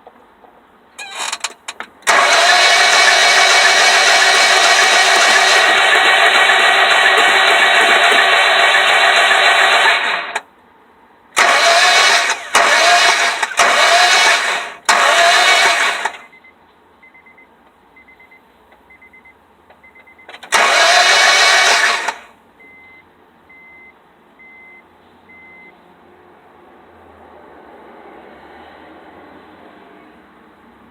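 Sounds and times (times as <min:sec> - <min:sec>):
car engine cranking: 0:01.0 - 0:10.4, 0:11.4 - 0:16.3, 0:20.3 - 0:22.3
faint high beep: 0:22.6 - 0:25.7.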